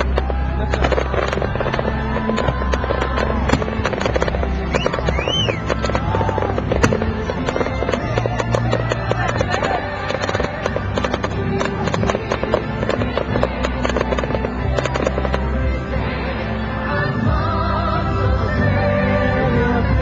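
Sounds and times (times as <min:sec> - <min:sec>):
fireworks crackling and popping: 0:00.0 - 0:16.0
music with low bass notes: 0:00.0 - 0:20.0
rising and falling whistle: 0:04.7 - 0:06.5.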